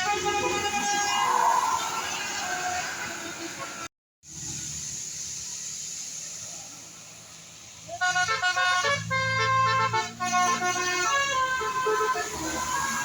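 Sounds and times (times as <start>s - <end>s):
road and engine noise: 0.0s - 13.0s
bus air horn chiming tune: 8.0s - 12.8s.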